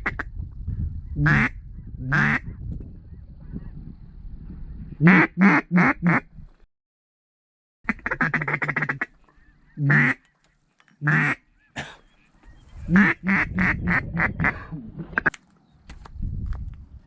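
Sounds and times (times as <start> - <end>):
duck quacking: 7.9 - 10.2, 11.0 - 12.2, 12.9 - 15.3.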